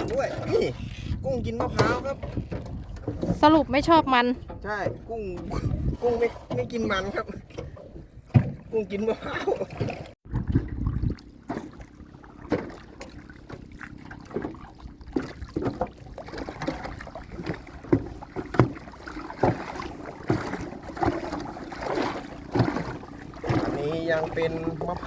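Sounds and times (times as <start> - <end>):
water splashing: 0.0 - 25.0
knocks on a boat: 1.4 - 5.9, 6.5 - 8.7, 12.4 - 25.0.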